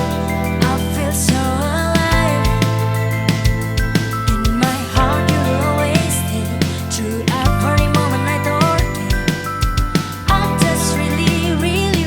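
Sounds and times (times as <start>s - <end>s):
person singing: 0.0s - 2.9s, 4.3s - 9.4s, 10.3s - 12.0s
drums: 0.0s - 12.0s
held chords: 0.0s - 12.0s.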